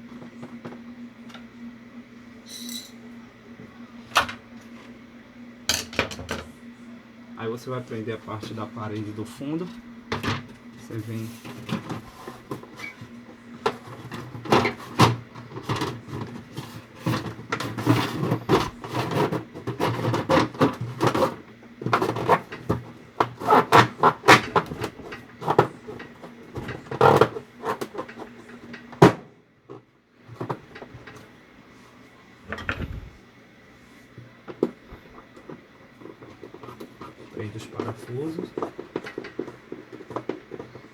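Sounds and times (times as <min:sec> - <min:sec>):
low steady hum: 0:00.0 - 0:18.9, 0:27.9 - 0:40.9.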